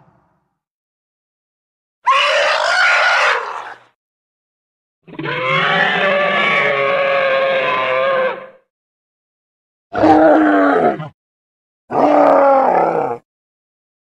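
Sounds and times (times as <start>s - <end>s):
pitched animal call: 2.0s - 3.8s, 5.1s - 8.6s.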